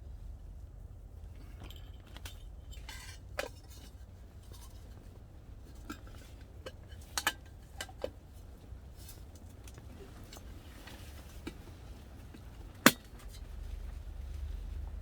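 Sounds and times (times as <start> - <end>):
steady low rumble: 0.0 - 5.8, 13.4 - 15.0.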